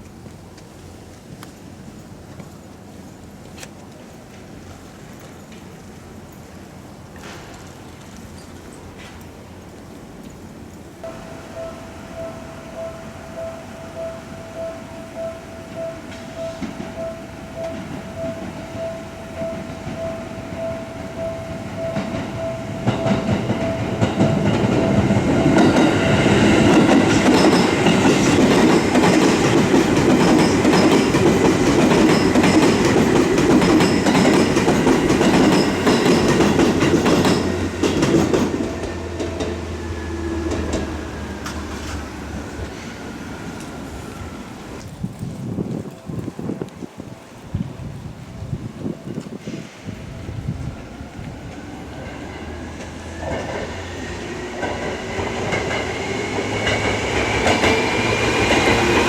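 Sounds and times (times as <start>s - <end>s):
train wheels clattering: 7.2s - 46.1s, 48.9s - 59.0s
level crossing warning bell: 10.7s - 41.0s
high whine falling in pitch: 11.0s - 26.6s.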